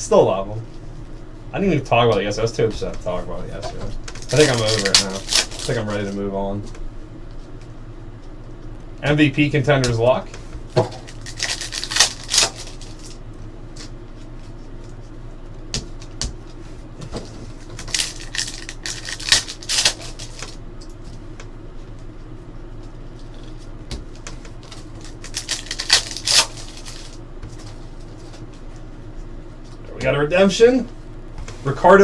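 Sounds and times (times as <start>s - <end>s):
cards sliding and snapping: 4.3s - 5.8s, 10.8s - 13.2s, 17.8s - 20.6s, 24.6s - 27.2s.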